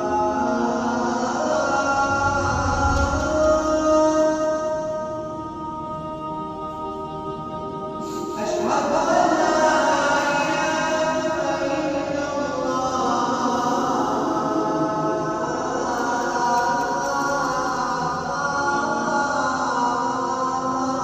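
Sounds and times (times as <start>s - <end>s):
man chanting call to prayer: 0.0s - 5.1s, 8.2s - 21.0s.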